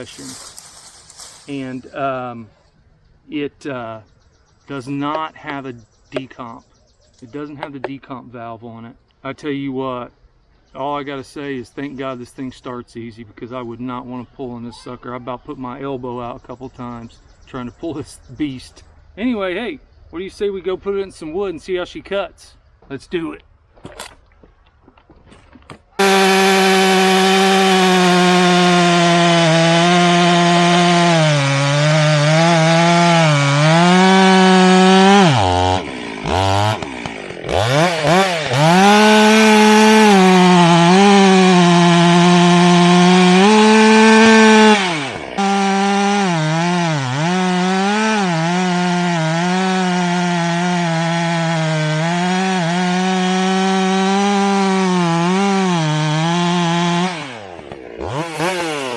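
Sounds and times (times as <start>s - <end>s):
chainsaw cutting wood: 0.0s - 1.7s, 26.0s - 58.9s.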